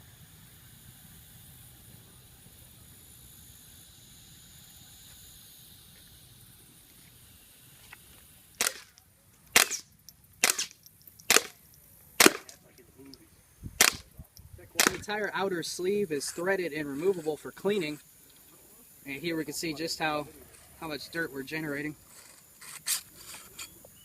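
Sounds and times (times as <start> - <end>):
suppressed rifle shots: 8.6 - 8.9, 9.6 - 11.6, 12.2 - 12.6, 13.8 - 14.0, 14.8 - 15.1.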